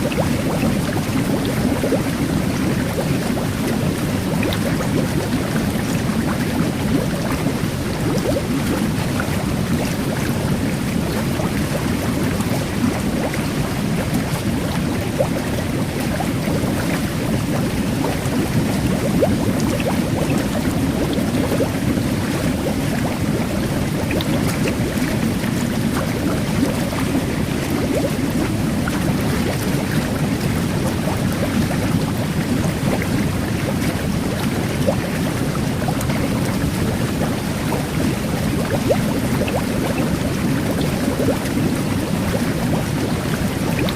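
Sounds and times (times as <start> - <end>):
fine bubbles crackling: 0.0 - 43.9
jet bath water churning: 0.0 - 43.9.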